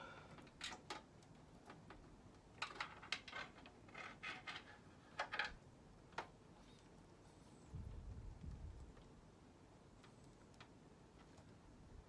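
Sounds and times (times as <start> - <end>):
plastic cables clicking and rubbing: 0.4 - 6.9.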